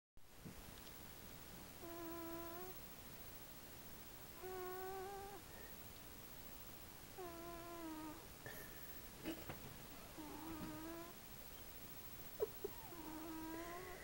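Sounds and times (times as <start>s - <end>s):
cat snoring: 1.8s - 2.8s, 4.4s - 5.5s, 7.2s - 8.2s, 10.0s - 11.2s, 12.4s - 14.0s.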